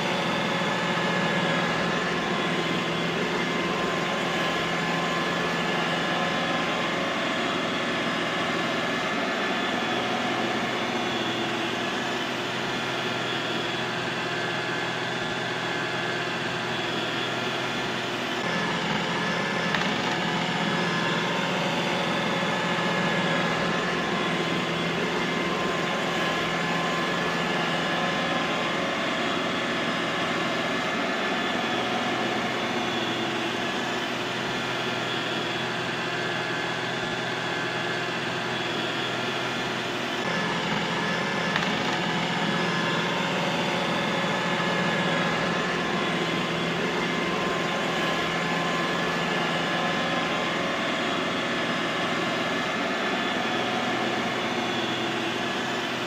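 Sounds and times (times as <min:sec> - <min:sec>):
robot vacuum cleaner whirring: 0:00.0 - 0:56.0.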